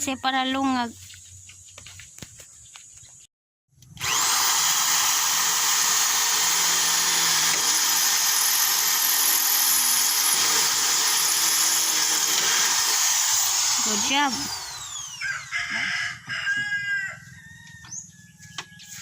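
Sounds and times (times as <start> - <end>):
electric drill drilling: 3.8 - 15.5.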